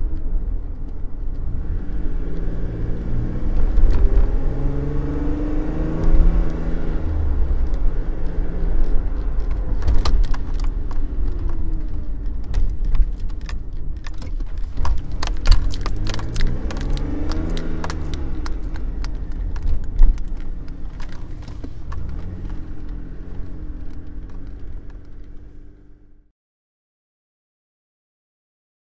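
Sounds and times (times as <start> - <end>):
car engine and road rumble: 0.0 - 26.3
turn signal clicking: 6.0 - 25.5.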